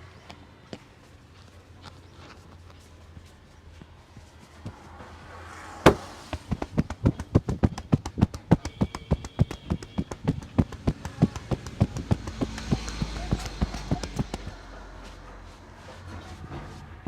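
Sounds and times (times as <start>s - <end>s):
hands slapping on head: 5.9s - 8.4s, 9.4s - 14.5s.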